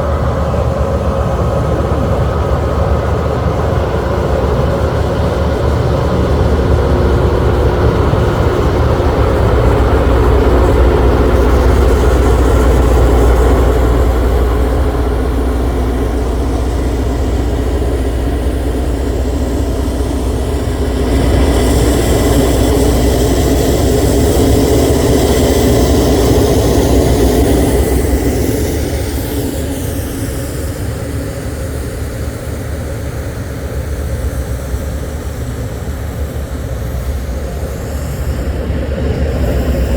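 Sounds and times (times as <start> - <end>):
diesel engine drone: 0.0 - 39.9.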